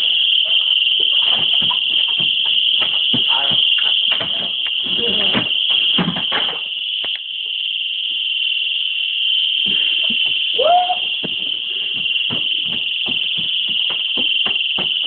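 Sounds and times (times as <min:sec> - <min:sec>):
house alarm shrill tone: 0:00.0 - 0:15.0
knocks and thumps: 0:01.0 - 0:06.6, 0:11.2 - 0:15.0.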